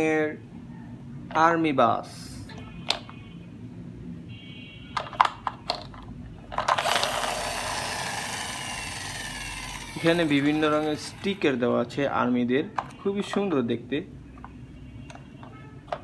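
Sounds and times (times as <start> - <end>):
toy gear motor whirring: 6.6 - 11.6.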